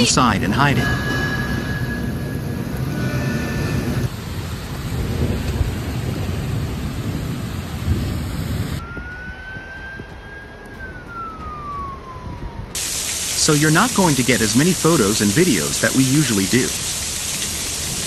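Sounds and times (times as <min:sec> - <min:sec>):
steady tone sliding down in pitch: 0:00.0 - 0:04.1, 0:08.8 - 0:12.8
heavy rain: 0:00.0 - 0:08.8, 0:12.7 - 0:18.0
low rumbling thunder: 0:00.0 - 0:12.9
wind noise: 0:00.0 - 0:12.9.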